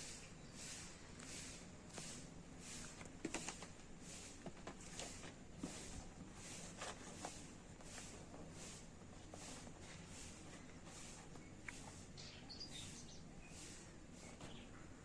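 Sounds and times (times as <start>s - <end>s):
bird chirps: 12.2s - 14.8s.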